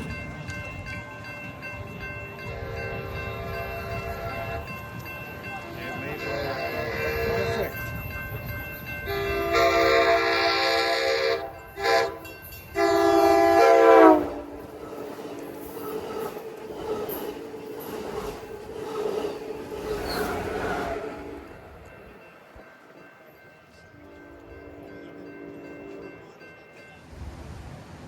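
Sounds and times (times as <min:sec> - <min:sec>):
train rumbling past: 0:00.0 - 0:28.0
locomotive air horn blasts: 0:06.2 - 0:07.7, 0:09.0 - 0:14.6
wheel clatter on rails: 0:14.3 - 0:23.8.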